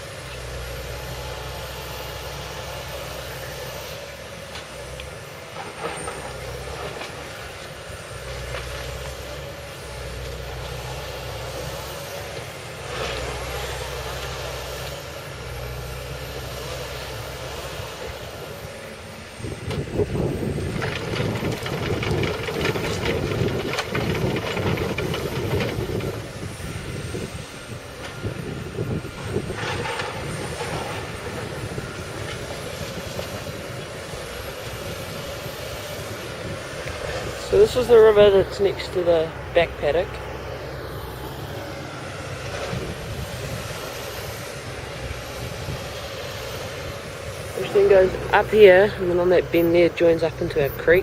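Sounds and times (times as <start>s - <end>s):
excavator diesel engine running: 0.0s - 51.0s
knocks and rattles: 20.7s - 26.2s.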